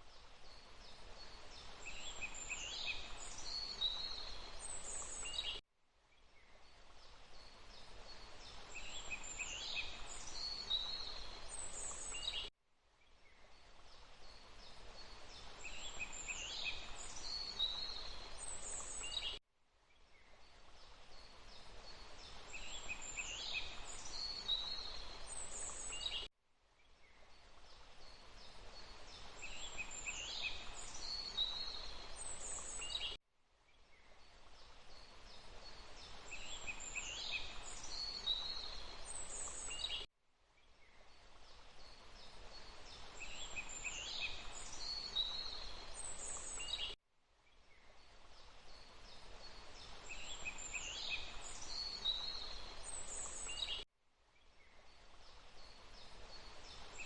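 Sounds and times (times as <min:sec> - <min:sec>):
running water: 0:27.3 - 0:33.0, 0:48.0 - 0:53.7.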